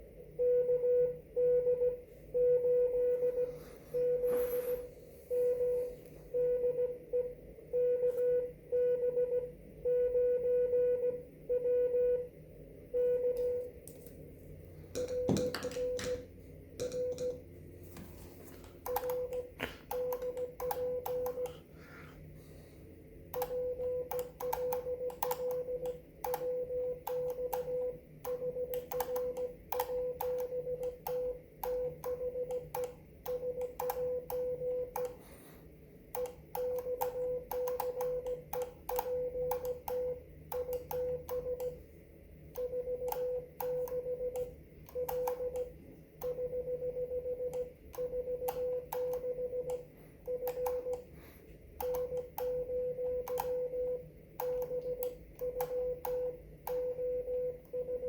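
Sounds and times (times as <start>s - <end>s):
morse code tone: 0.4s - 12.3s, 12.9s - 13.7s, 15.0s - 17.4s, 23.4s - 35.1s, 36.2s - 41.8s, 42.6s - 51.0s, 51.8s - 58.0s
keying clicks: 18.8s - 21.6s, 23.3s - 35.2s, 36.1s - 41.8s, 47.5s - 51.1s, 53.2s - 53.6s.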